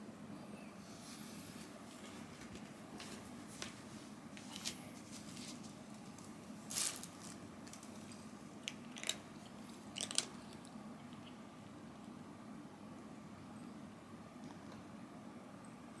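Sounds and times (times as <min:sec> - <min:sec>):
cat crunching food: 0:06.0 - 0:12.2.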